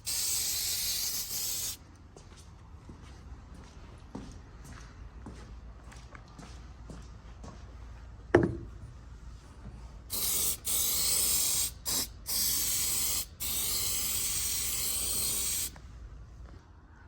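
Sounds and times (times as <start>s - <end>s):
aerosol can spraying: 0.0s - 1.8s, 10.1s - 15.8s.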